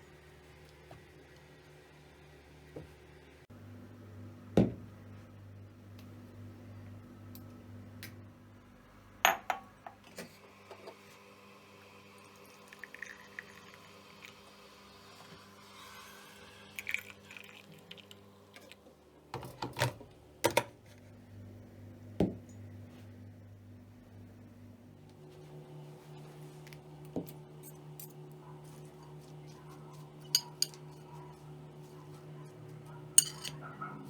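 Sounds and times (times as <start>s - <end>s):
kitchenware knocking and clinking: 9.3s - 10.0s, 33.2s - 33.6s.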